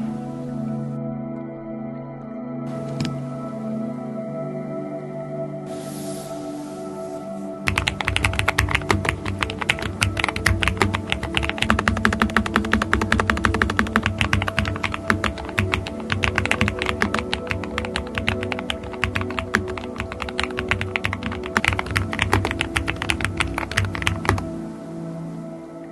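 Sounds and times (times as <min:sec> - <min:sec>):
background music: 0:00.0 - 0:25.9
mechanical keyboard typing: 0:07.7 - 0:24.5.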